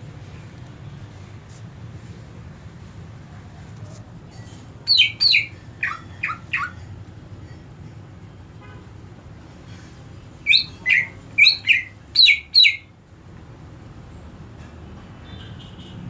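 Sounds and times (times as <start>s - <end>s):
low background hum: 3.3s - 13.5s
bird chirping: 4.9s - 6.9s, 10.4s - 12.9s.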